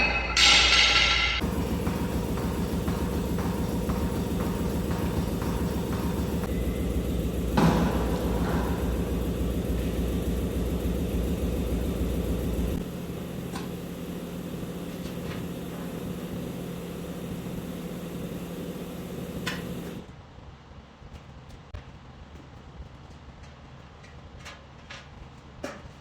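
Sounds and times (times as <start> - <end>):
machine humming: 0.0 - 20.0.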